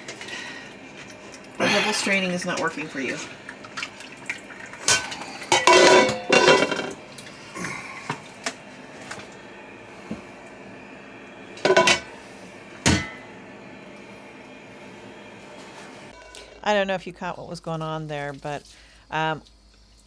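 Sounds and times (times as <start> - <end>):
metal pots clanking: 4.4 - 7.0, 11.6 - 12.2, 12.8 - 13.3.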